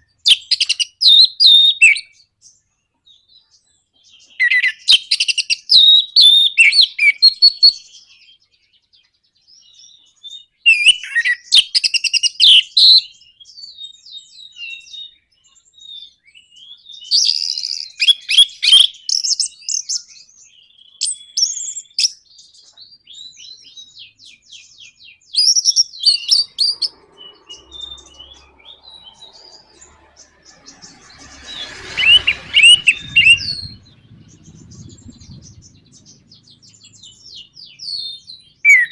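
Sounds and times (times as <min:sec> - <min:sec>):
thrush singing rapid high notes: 0:26.2 - 0:37.2.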